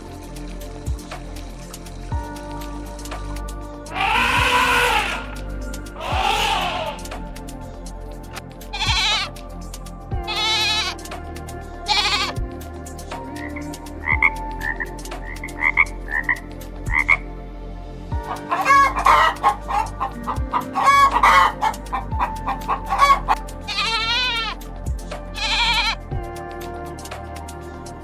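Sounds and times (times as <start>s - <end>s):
background music with slow beat: 0.0s - 28.0s
rooster crowing: 3.9s - 5.4s, 6.0s - 7.1s, 8.8s - 9.3s, 10.3s - 10.9s, 18.3s - 24.6s, 25.4s - 26.0s
chickens clucking: 8.8s - 9.3s, 10.3s - 11.0s, 18.2s - 24.6s.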